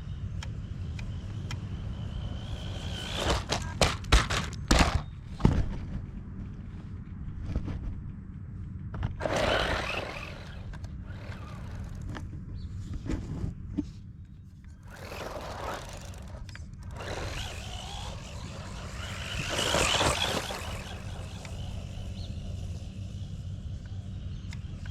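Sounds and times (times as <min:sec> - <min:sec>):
toy truck motor whirring: 0:00.6 - 0:05.0, 0:09.2 - 0:12.3, 0:14.6 - 0:24.9.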